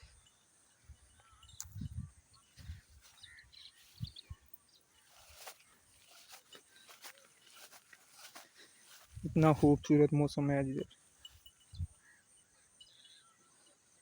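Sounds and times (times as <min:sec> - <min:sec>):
faint bird chirps: 0:00.0 - 0:09.1, 0:10.8 - 0:13.9
wind buffeting microphone: 0:01.5 - 0:03.0, 0:03.9 - 0:04.4, 0:09.1 - 0:09.9.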